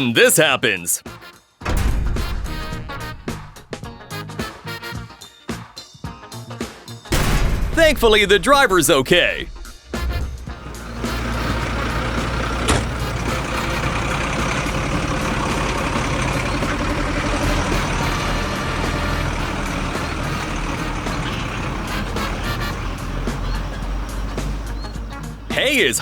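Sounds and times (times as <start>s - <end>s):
heavy vehicle engine rumbling: 7.2s - 26.0s.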